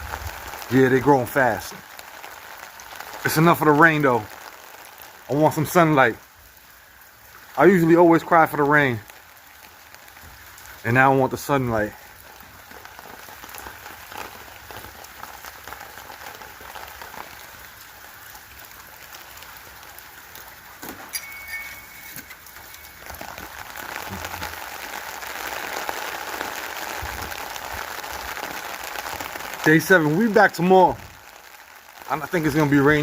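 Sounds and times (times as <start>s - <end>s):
raindrop hits: 0.0s - 33.0s
steady rain falling: 0.0s - 33.0s.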